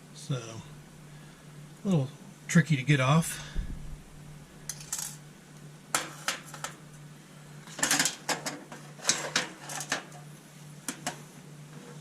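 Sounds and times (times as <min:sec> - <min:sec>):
steady low hum: 0:00.0 - 0:12.0
metal parts and tool clinking: 0:04.7 - 0:05.2.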